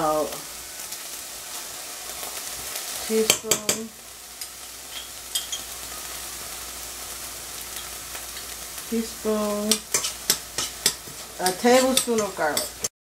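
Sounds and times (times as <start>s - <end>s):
vegetables sizzling in a frying pan: 0.0s - 12.9s
utensil clicking against pan: 9.7s - 12.9s.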